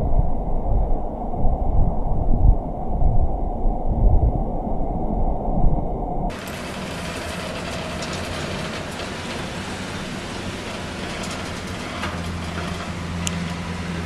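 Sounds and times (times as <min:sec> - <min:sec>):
low hum: 0:00.0 - 0:14.0
steady rushing noise: 0:00.0 - 0:14.0
faint clicks and rattles: 0:06.3 - 0:14.0.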